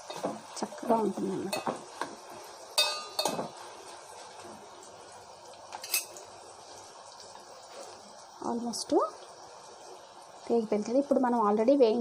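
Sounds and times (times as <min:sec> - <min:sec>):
spices frying in oil: 0:00.0 - 0:12.0
metal spoon clinking on pan: 0:01.5 - 0:01.8, 0:02.8 - 0:03.5, 0:05.7 - 0:06.3.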